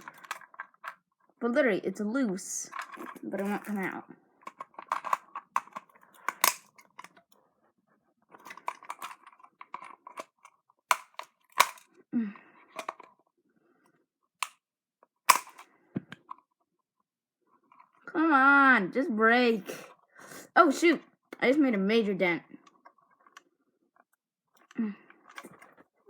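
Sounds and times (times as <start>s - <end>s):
plastic mouse shell creaking: 0.0s - 0.9s
sharp plastic snaps: 4.5s - 7.2s, 10.9s - 11.8s, 15.3s - 16.2s.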